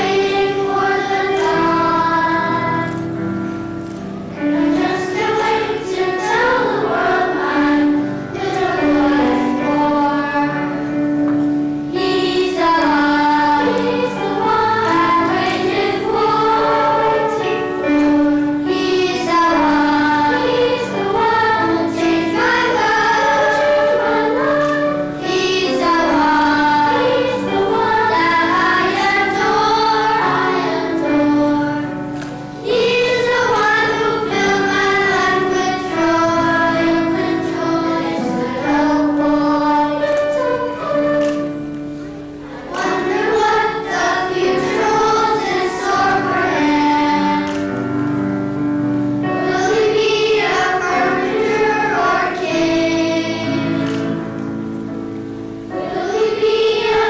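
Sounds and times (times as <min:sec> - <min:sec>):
children's choir singing: 0:00.0 - 0:57.0
instrumental accompaniment: 0:00.0 - 0:57.0.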